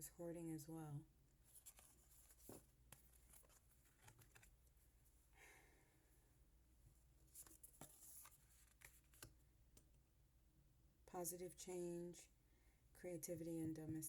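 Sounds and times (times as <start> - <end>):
cards sliding and tapping: 1.6 - 4.6, 7.3 - 9.4.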